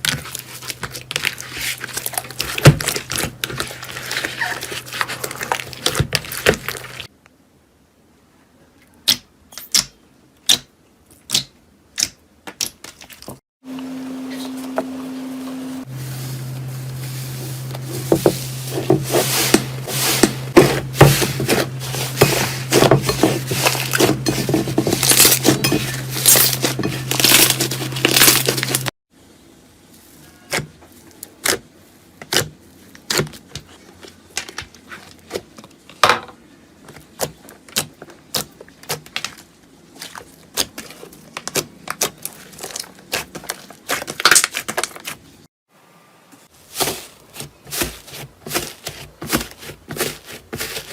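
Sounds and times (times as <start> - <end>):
low steady hum: 13.7 - 30.0.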